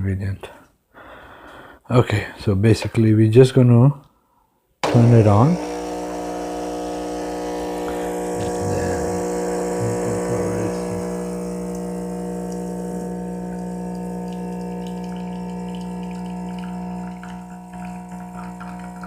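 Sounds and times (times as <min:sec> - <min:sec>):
espresso machine pump humming: 0:04.8 - 0:19.0
water gurgling and spluttering: 0:09.8 - 0:19.0.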